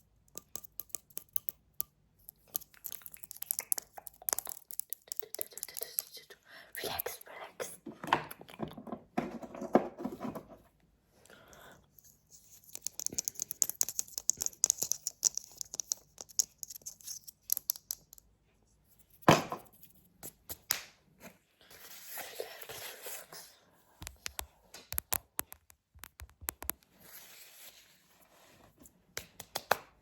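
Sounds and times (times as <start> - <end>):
crinkling and scratching: 2.3 - 10.8.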